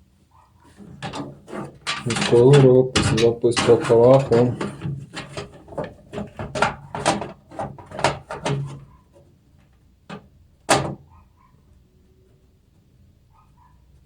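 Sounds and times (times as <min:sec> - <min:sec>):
hard drive clicking and scraping: 0:00.6 - 0:09.2.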